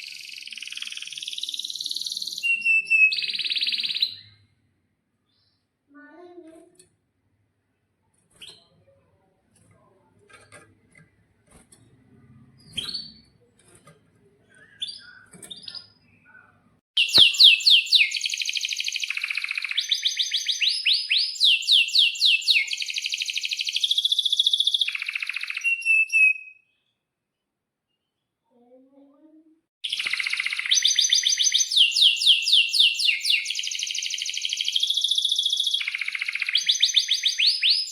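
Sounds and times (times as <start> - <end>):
canary singing: 0.0 - 4.4, 14.6 - 26.8, 29.8 - 37.9.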